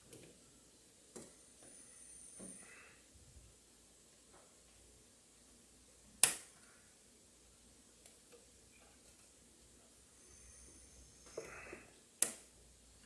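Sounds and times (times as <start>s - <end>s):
memory clip snapping shut: 6.2s - 6.5s.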